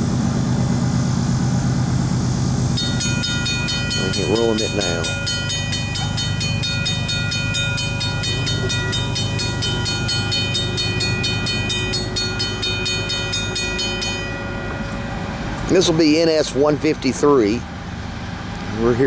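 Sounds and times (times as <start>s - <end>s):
fast high ringing tones: 0.0s - 18.3s
low railway rumble: 0.0s - 19.0s.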